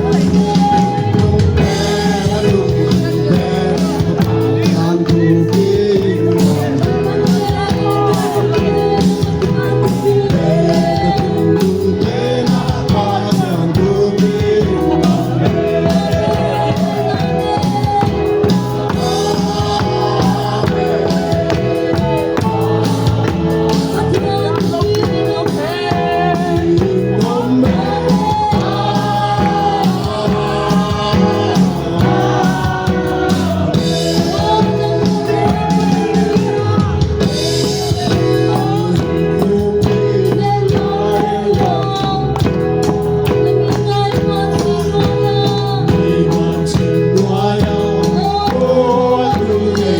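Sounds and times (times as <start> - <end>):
song with singing and drums: 0.0 - 49.9.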